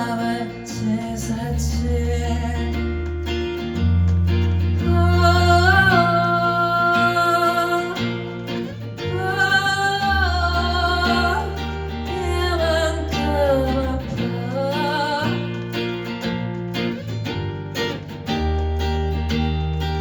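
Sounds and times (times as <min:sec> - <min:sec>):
person singing with vibrato: 0:00.0 - 0:03.0, 0:04.8 - 0:15.9
low sustained bass notes: 0:00.0 - 0:15.2
acoustic guitar playing: 0:00.0 - 0:20.0.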